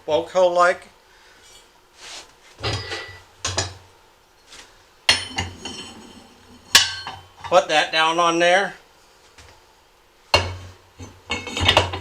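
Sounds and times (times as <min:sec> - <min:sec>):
ringing metal clang: 0:02.6 - 0:03.8, 0:05.1 - 0:07.5.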